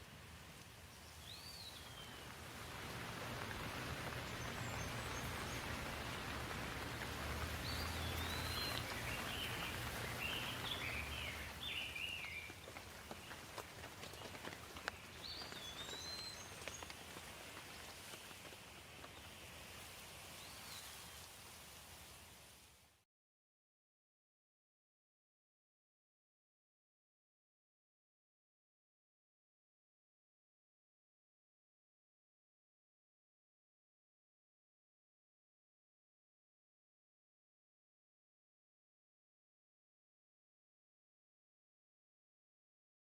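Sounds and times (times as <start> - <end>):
steady rain falling: 0.0 - 23.0
birds chirping: 1.0 - 18.2
water drips and taps: 3.2 - 11.6, 12.2 - 19.2.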